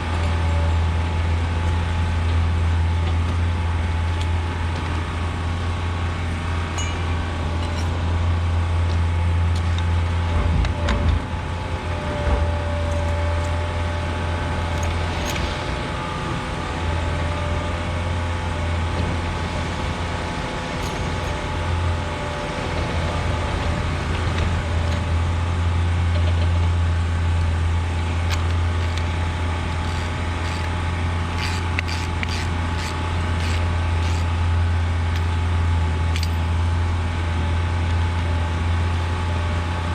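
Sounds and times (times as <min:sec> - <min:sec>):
core drill motor humming: 0:11.4 - 0:25.4, 0:27.9 - 0:34.8.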